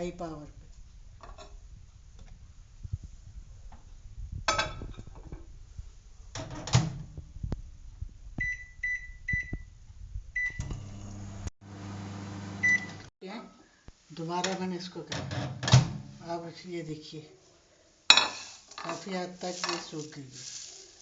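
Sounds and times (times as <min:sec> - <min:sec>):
keypad beeps: 0:08.4 - 0:09.6
microwave oven humming: 0:10.4 - 0:13.1
plate clattering: 0:18.1 - 0:19.0.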